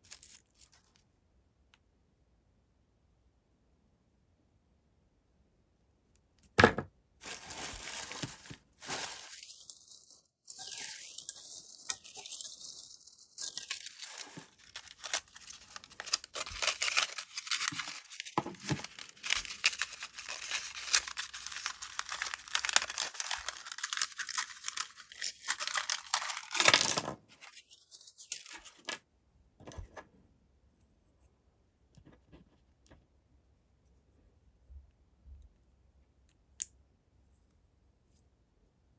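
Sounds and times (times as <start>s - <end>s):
packaging being torn and crinkled: 7.2s - 29.0s.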